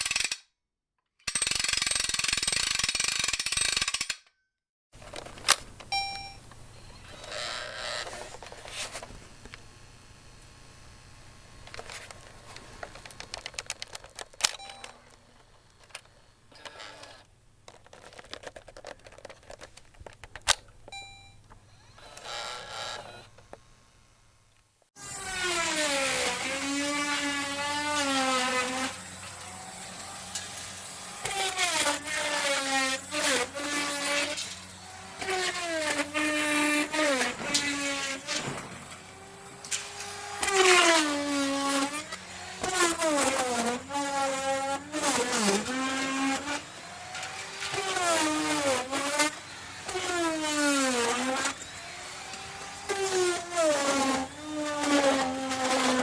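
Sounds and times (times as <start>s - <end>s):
power tool motor revving: 6.5s - 17.3s, 21.7s - 23.4s, 25.0s - 56.0s.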